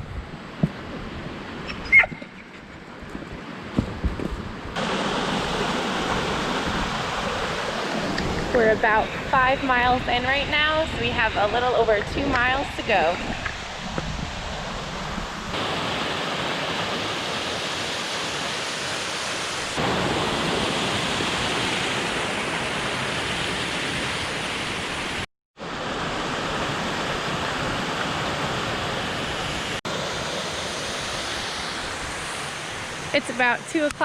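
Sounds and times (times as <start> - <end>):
waterfall rushing: 4.8 - 9.9, 15.5 - 33.9.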